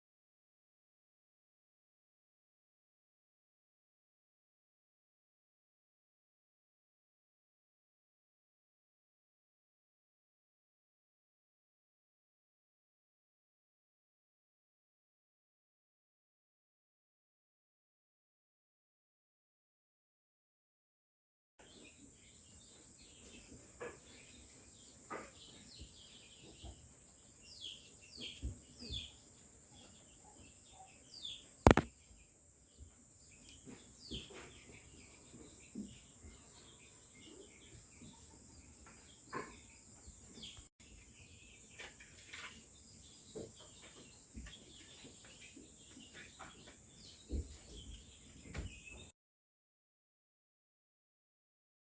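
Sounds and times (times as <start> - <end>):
small birds chirping: 21.6 - 49.2
sharp click: 31.7 - 31.9.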